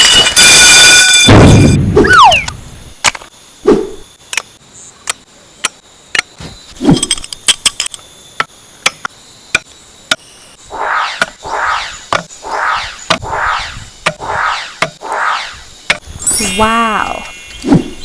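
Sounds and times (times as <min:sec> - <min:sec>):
pulsing sound: 0:10.7 - 0:16.6.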